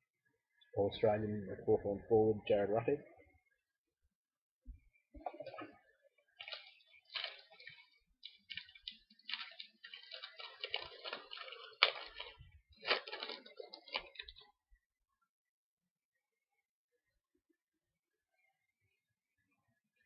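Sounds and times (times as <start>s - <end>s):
foil pack crinkling and tearing: 6.4s - 14.5s.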